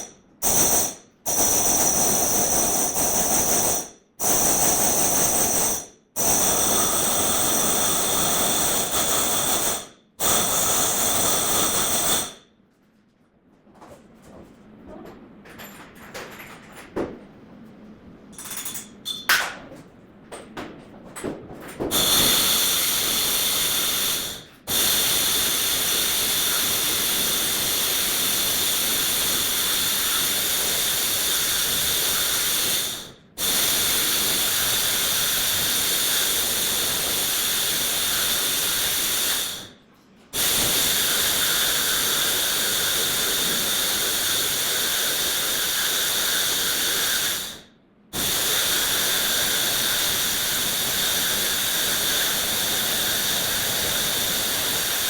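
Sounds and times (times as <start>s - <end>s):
loud steady hiss: 22.0s - 39.8s, 40.4s - 55.0s.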